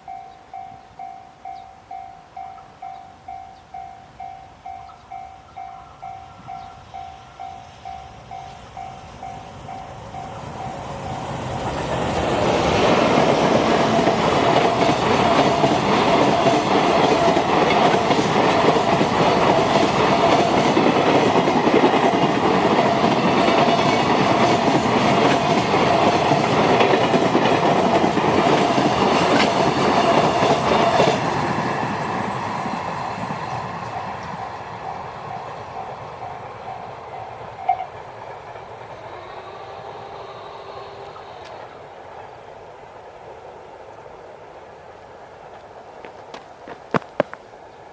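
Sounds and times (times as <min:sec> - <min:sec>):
train wheels clattering: 0:11.8 - 0:36.0.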